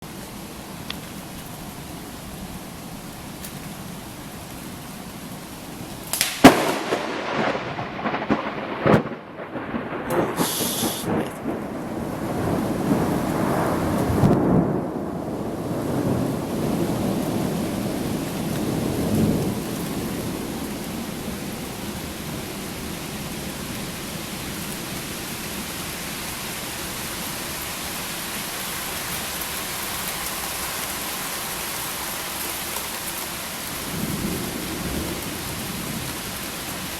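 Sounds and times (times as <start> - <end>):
steady rain: 0.0 - 36.9
thunder rumbling: 6.1 - 21.5, 33.8 - 36.3
sharp thunder crack: 6.2 - 14.9.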